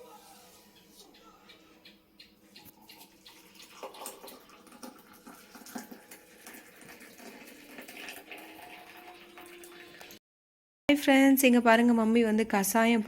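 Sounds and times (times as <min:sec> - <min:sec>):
liquid trickling into glass: 0:02.6 - 0:10.2.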